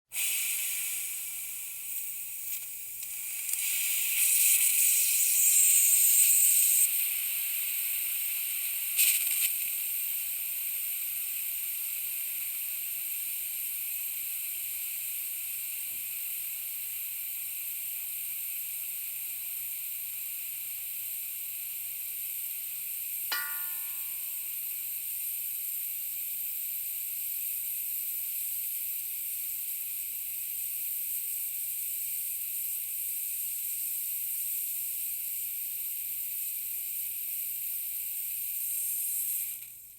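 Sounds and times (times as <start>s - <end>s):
compressed air hissing: 0.1s - 19.4s
metallic ping: 23.3s - 24.6s.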